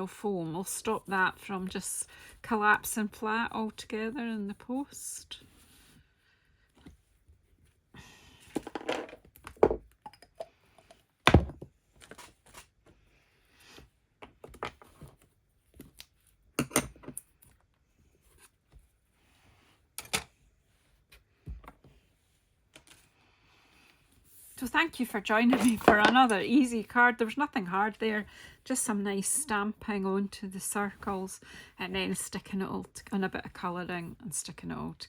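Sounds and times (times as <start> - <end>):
paper rustling: 25.4 - 26.4.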